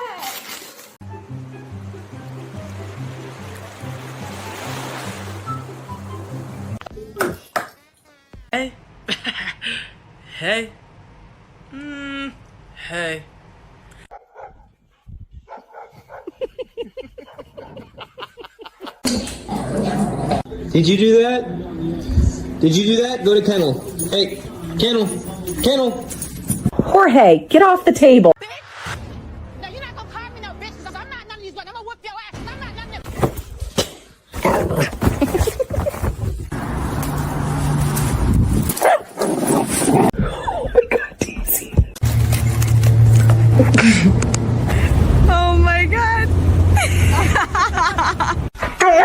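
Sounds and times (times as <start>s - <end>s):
dog barking: 14.1s - 14.8s, 15.4s - 16.4s, 38.8s - 39.2s.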